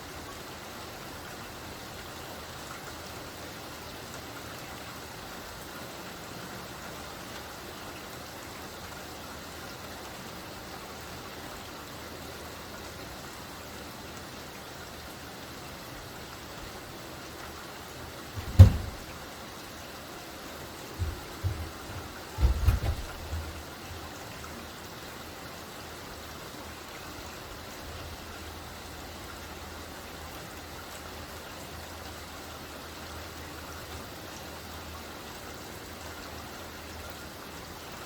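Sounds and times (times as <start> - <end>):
light rain falling: 0.0 - 38.0
deep thump: 18.4 - 19.2, 21.0 - 23.6
small knocks: 18.4 - 19.2, 20.9 - 23.6.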